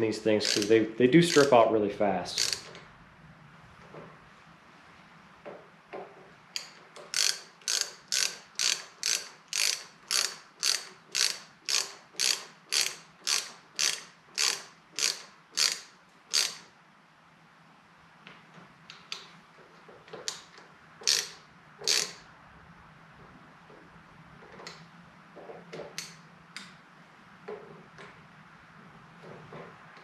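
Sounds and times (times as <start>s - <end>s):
hand ratchet clicking: 0.0s - 1.7s, 2.3s - 2.8s, 6.6s - 16.7s, 20.2s - 22.2s, 25.9s - 26.7s.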